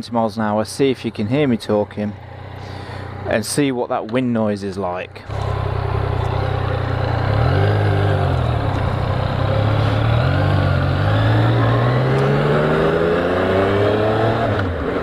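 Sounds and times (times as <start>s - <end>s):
motorcycle engine accelerating: 5.2s - 15.0s.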